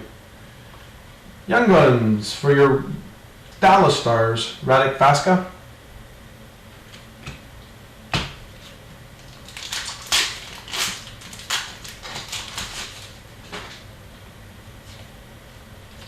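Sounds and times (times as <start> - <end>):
cards crinkling and snapping: 8.6 - 13.8.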